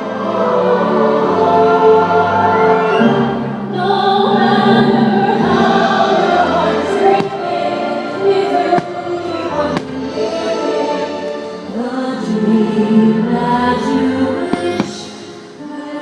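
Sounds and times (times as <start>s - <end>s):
choir singing with orchestra: 0.0s - 16.0s
faint fireworks bangs: 7.0s - 10.6s, 14.5s - 15.6s.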